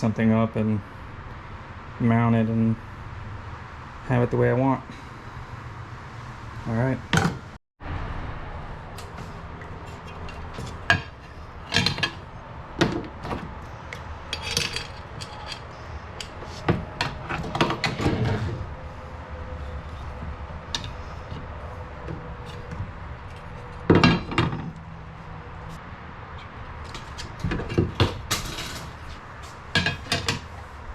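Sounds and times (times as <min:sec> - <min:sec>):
metal tools clinking and knocking: 0:09.8 - 0:13.4, 0:14.3 - 0:18.5, 0:26.9 - 0:29.0, 0:29.8 - 0:30.5.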